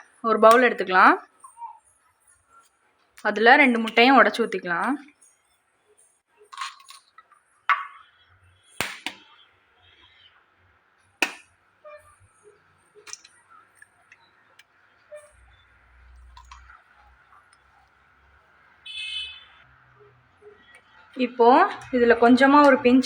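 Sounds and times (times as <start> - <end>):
eggs cracked on a bowl: 11.2 - 11.5.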